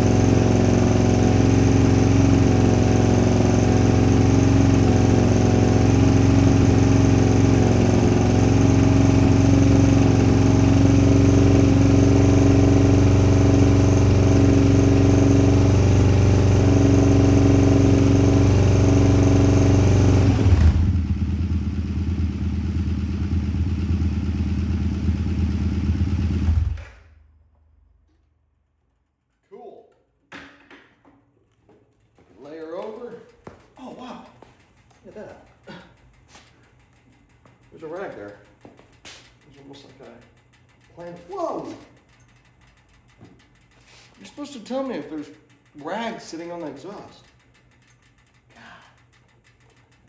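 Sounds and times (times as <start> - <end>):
motorcycle engine running: 0.0 - 27.2, 39.6 - 42.4.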